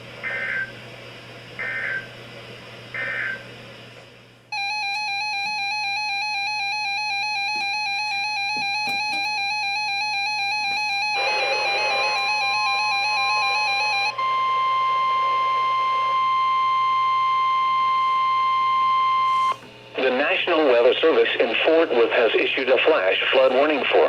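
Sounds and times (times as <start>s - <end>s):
trilling electronic alert tone: 4.6s - 17.1s
data bursts: 9.7s - 17.7s
steady higher tone: 10.4s - 19.4s.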